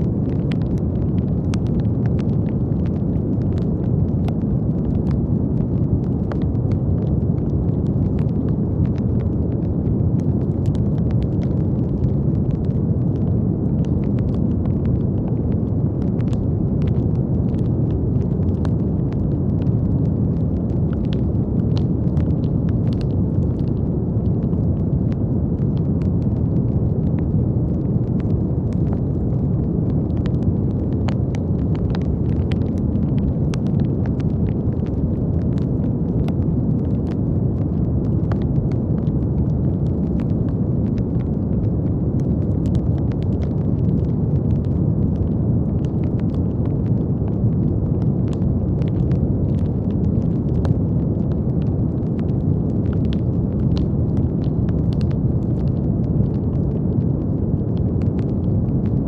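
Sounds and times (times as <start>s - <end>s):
brown noise rushing hiss: 0.0s - 59.0s.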